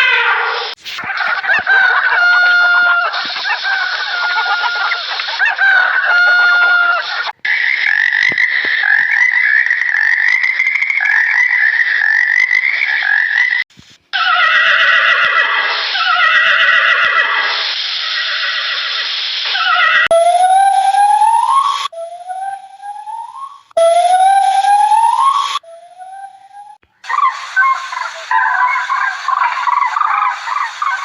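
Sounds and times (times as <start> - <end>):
high-pitched animal chorus: 0.0 - 13.6, 14.2 - 20.1, 27.0 - 31.0
rooster crowing: 1.2 - 7.3
horse whinnying: 14.2 - 17.5.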